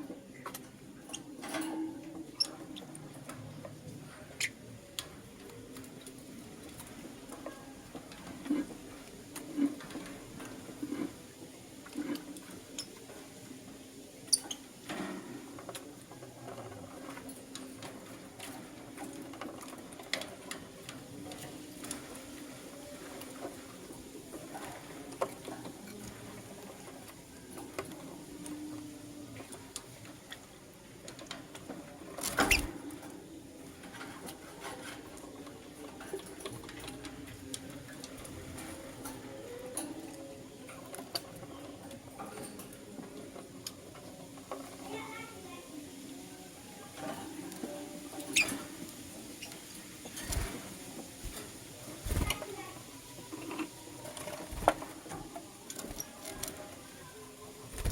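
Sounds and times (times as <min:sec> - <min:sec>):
lovebirds chirping and squeaking: 0:32.5 - 0:32.7, 0:48.3 - 0:48.7.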